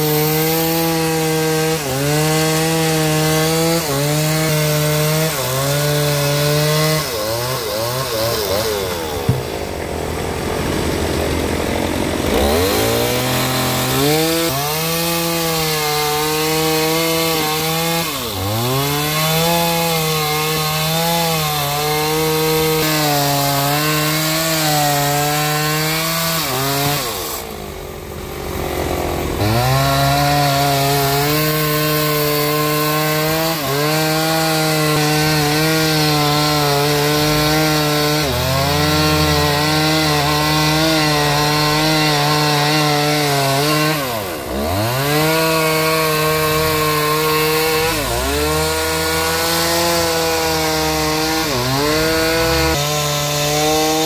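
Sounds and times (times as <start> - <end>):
engine-driven sawmill sawing log: 0.0 - 54.0.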